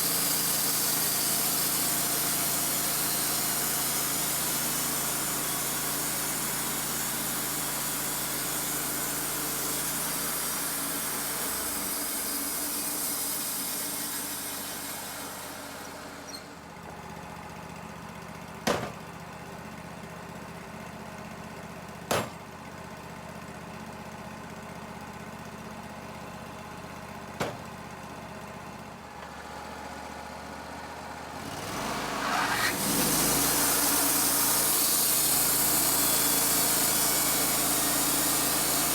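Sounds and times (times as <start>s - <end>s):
bandsaw blade cutting log: 0.0s - 16.5s, 22.1s - 22.4s, 31.6s - 38.9s
sawmill engine running: 0.0s - 38.9s.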